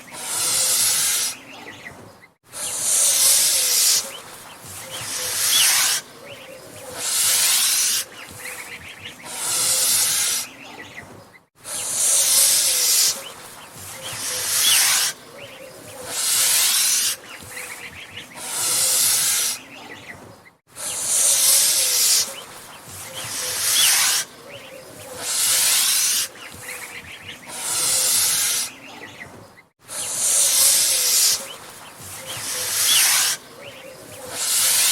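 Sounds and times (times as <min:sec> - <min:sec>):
goose hissing: 0:00.0 - 0:01.6, 0:02.5 - 0:10.8, 0:11.6 - 0:19.8, 0:20.7 - 0:29.0, 0:29.8 - 0:34.9.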